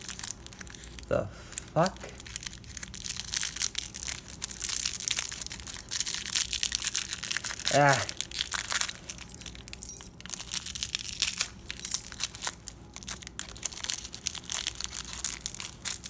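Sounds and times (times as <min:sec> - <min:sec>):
packaging tearing and crinkling: 0:00.0 - 0:16.0.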